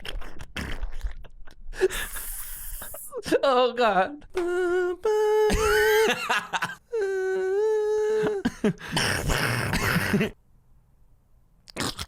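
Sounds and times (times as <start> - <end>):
breathy rasping vocal noise: 4.2 - 10.4.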